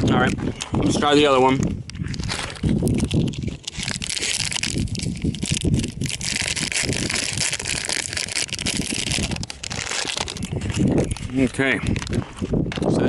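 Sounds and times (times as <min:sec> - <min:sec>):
wind buffeting microphone: 0:00.0 - 0:13.0
plastic wrapper crinkling: 0:01.9 - 0:12.2.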